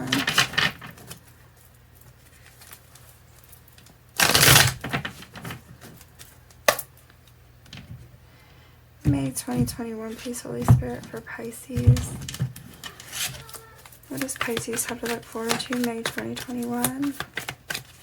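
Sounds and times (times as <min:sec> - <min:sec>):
cards clicking: 0:12.8 - 0:18.0
cards riffle shuffled: 0:12.8 - 0:18.0.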